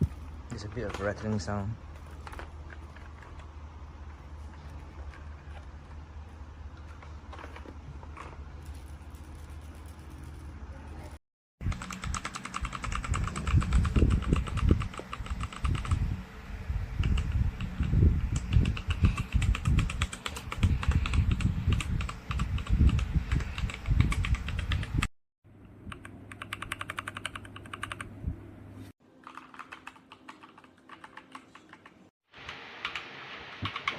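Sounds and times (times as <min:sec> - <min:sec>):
mechanical keyboard typing: 0:11.6 - 0:16.1, 0:17.0 - 0:25.1, 0:25.9 - 0:28.1, 0:29.2 - 0:32.0, 0:33.6 - 0:33.9.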